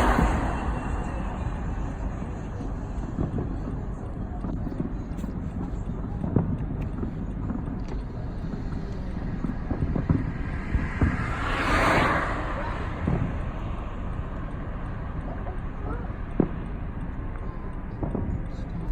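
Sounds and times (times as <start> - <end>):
distant fireworks booms: 0.0 - 18.9
wind rumble on microphone: 0.0 - 18.9.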